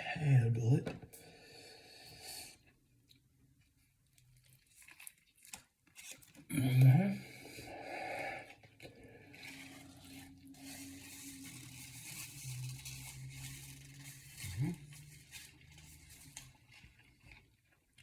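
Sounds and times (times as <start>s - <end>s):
man moaning: 6.5s - 7.4s
soft rustling: 9.2s - 18.0s.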